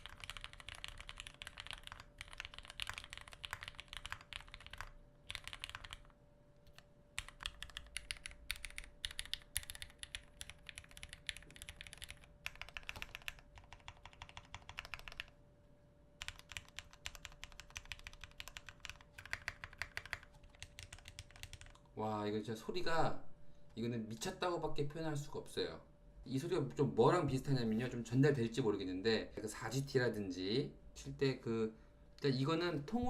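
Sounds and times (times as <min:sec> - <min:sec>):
mechanical keyboard typing: 0:00.0 - 0:06.1, 0:06.7 - 0:15.3, 0:16.2 - 0:21.8.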